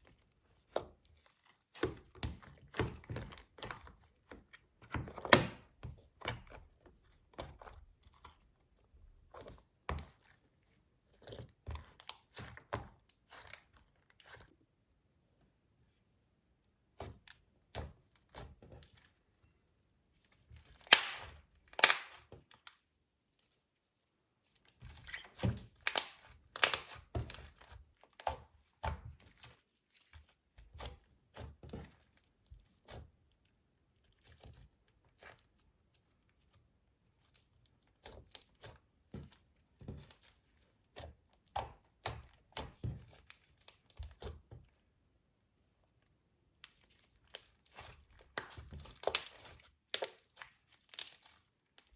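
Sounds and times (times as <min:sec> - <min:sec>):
slime crackling and popping: 0:20.8 - 0:22.3, 0:25.7 - 0:27.4, 0:47.3 - 0:51.9.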